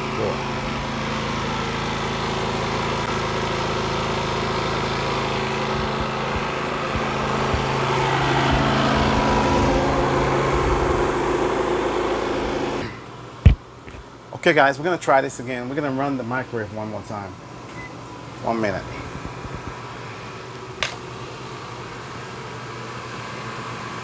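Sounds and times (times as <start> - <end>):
generator engine running: 0.0 - 14.3, 15.4 - 24.0.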